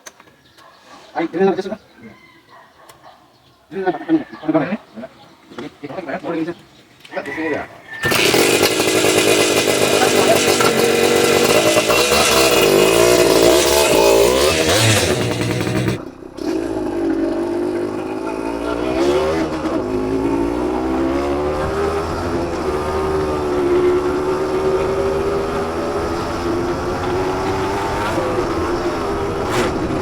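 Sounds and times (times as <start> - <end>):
two-stroke engine revving: 8.0 - 30.0.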